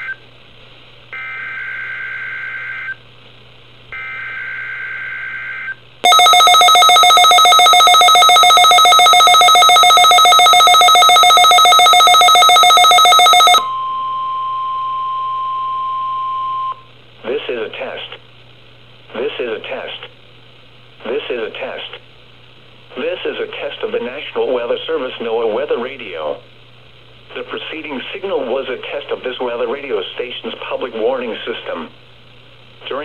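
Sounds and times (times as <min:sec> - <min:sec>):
rapidly pulsing alarm: 0:01.2 - 0:03.0, 0:04.0 - 0:16.8
steady warning alarm tone: 0:04.0 - 0:16.9.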